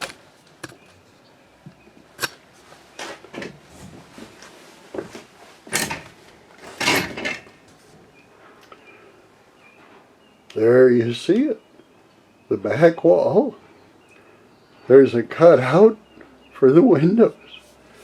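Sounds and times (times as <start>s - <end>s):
knocks and clunks of handling: 0.0s - 7.8s.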